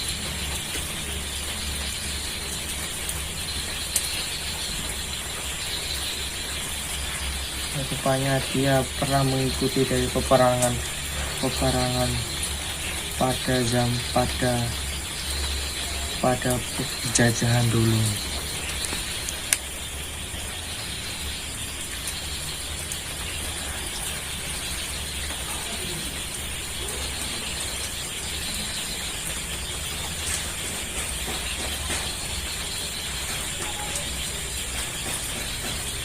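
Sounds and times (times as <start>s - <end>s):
outdoor background hiss: 0.0s - 36.0s.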